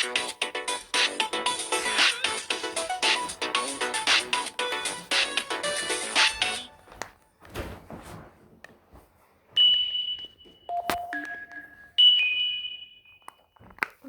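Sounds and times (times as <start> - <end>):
phone electronic chime tones: 9.6 - 13.3.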